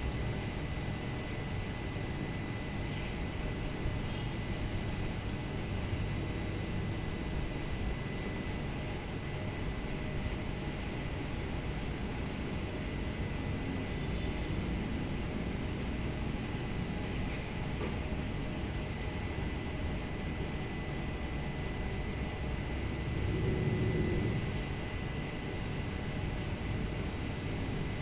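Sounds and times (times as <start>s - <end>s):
steady rumbling noise: 18.0s - 28.0s.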